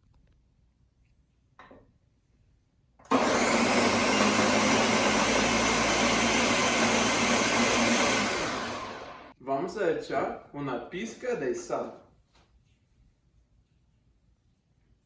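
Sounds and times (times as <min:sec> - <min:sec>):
blender running: 0:03.0 - 0:09.3.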